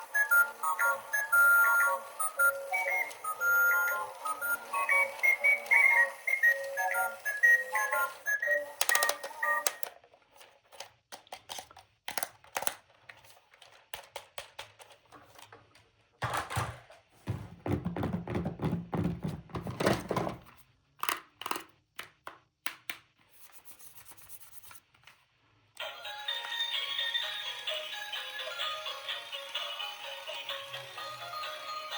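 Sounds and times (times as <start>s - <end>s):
plastic toys clicking and tapping: 0.1s - 16.8s, 21.0s - 23.2s.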